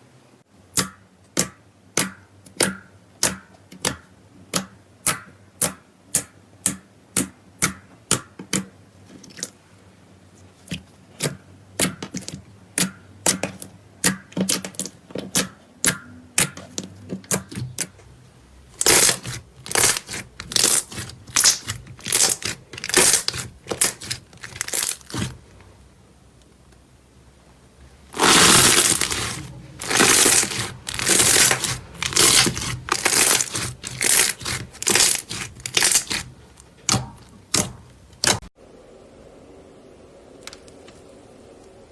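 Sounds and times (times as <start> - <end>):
slime crackling squishes: 18.7 - 25.5, 28.1 - 38.5.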